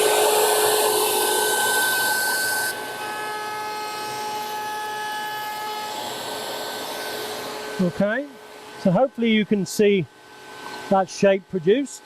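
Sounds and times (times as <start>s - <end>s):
dust extractor: 0.0s - 3.2s, 5.9s - 12.0s
router spinning: 0.0s - 7.9s.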